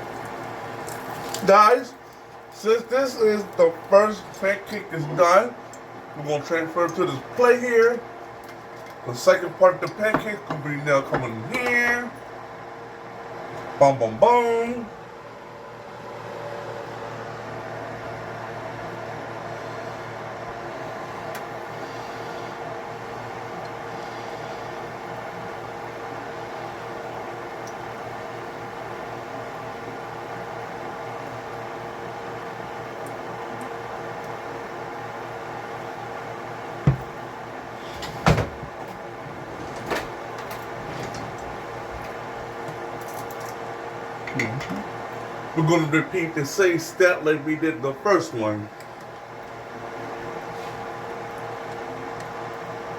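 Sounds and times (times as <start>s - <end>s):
steady hum: 0.0s - 52.9s
kitchen knocks: 36.9s - 37.2s.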